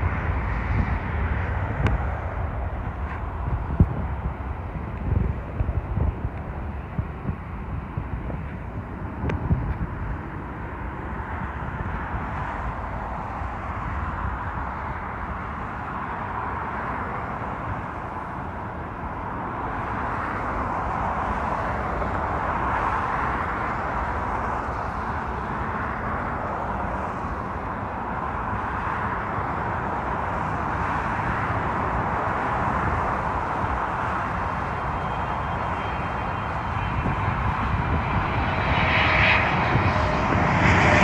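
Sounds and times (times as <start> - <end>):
jet engine rush and rumble: 0.0 - 41.0.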